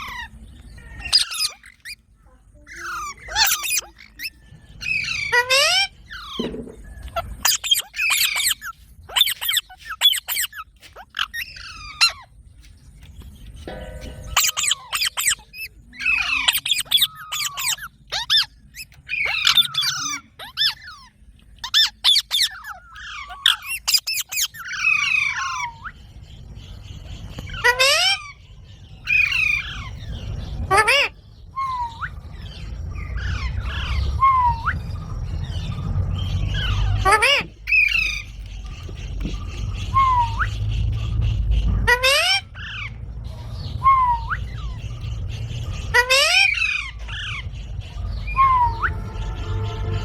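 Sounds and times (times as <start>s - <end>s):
parrot squawking: 0.0s - 12.3s, 13.6s - 26.0s, 27.5s - 28.4s, 29.0s - 50.0s.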